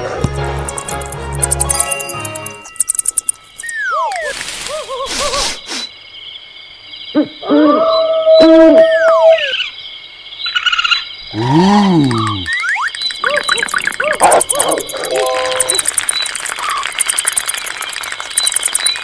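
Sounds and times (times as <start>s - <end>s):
held tone: 0.7s - 4.3s, 13.3s - 17.7s
hooting calls: 10.6s - 19.0s
sliding whistle tones: 12.6s - 19.0s.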